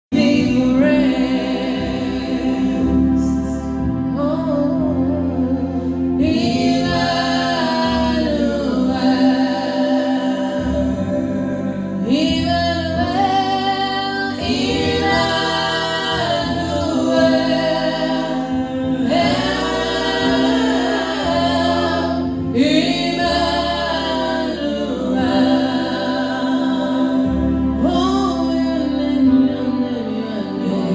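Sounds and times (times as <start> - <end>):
sustained keyboard chords: 0.1 - 30.9
voices singing in harmony: 0.1 - 30.9.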